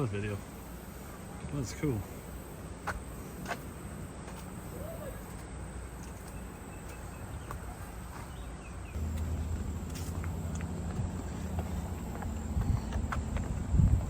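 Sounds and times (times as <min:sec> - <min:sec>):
low rumble on microphone: 0:08.9 - 0:14.0.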